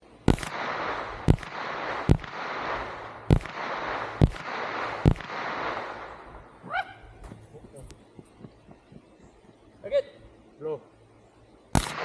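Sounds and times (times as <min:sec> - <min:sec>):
steady background hiss: 0:00.0 - 0:12.0
rifle shots: 0:00.2 - 0:06.4, 0:11.7 - 0:12.0.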